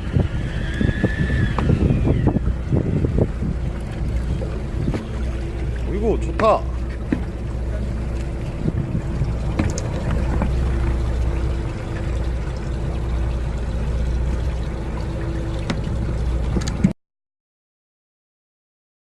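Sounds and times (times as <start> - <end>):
boat engine rumbling: 0.0 - 17.0
light knocks on board: 7.1 - 7.3.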